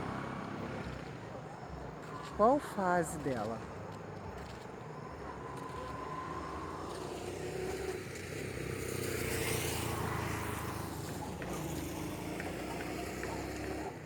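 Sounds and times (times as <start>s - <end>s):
car passing by: 4.4s - 14.0s.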